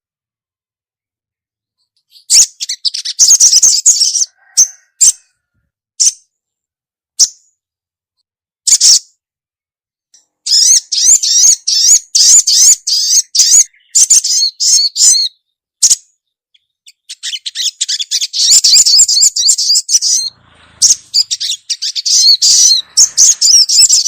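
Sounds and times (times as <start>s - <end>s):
bird high sharp chirps: 2.0s - 5.4s, 8.7s - 9.2s, 10.4s - 24.0s.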